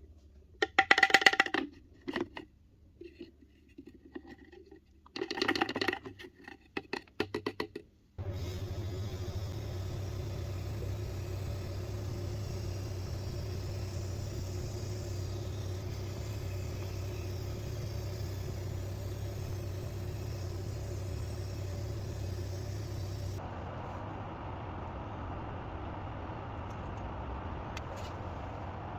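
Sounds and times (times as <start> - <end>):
workshop machine humming and hissing: 8.2 - 28.9.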